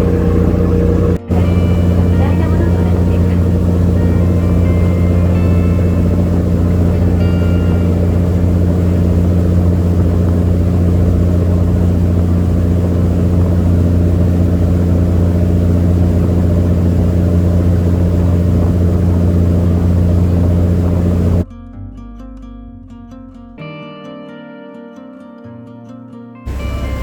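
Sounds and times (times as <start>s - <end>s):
boat engine drone: 0.0s - 21.4s, 26.5s - 27.0s.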